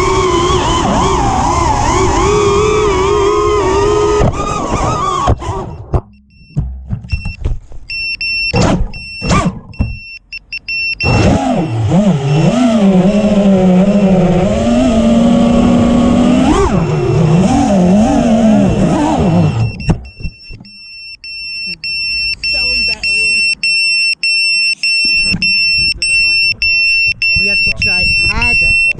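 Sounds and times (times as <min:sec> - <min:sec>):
quadcopter motors whining: 0:00.0 - 0:05.9, 0:11.0 - 0:20.2
high electronic beep: 0:05.7 - 0:15.1, 0:17.9 - 0:28.9.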